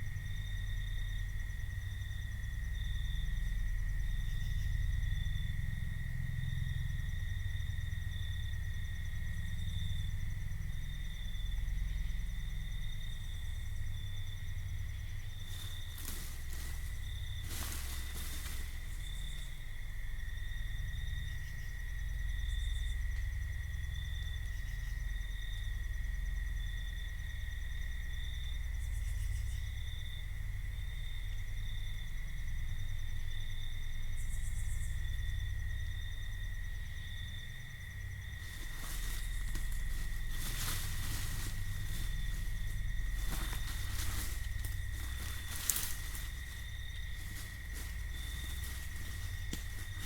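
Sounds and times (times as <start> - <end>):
steady low rumble: 0.0 - 24.4, 37.6 - 50.0
insect chirping in pulses: 0.0 - 50.0
insect continuous high trill: 0.0 - 50.0.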